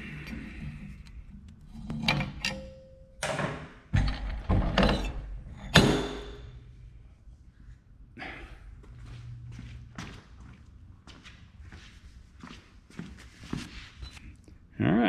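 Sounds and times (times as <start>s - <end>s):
metal knocks: 1.9s - 6.6s.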